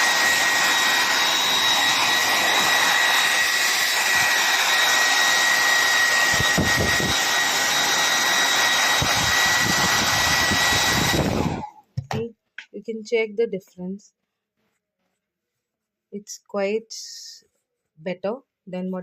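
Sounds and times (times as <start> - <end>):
hair dryer running: 0.0 - 12.2.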